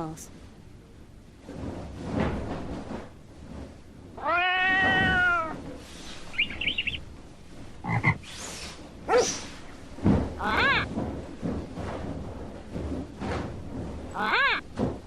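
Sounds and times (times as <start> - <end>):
short squeaks: 4.3 - 7.1
high chirping trill: 6.3 - 7.0
cartoon animal call: 10.4 - 10.9, 14.2 - 14.6.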